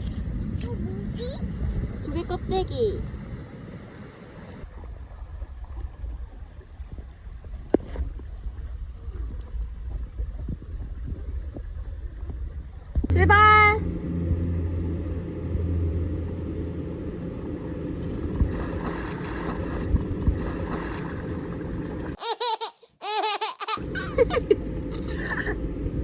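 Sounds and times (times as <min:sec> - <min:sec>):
low rumble: 0:00.0 - 0:22.2, 0:23.8 - 0:26.0
child laughing and squealing: 0:22.2 - 0:24.4.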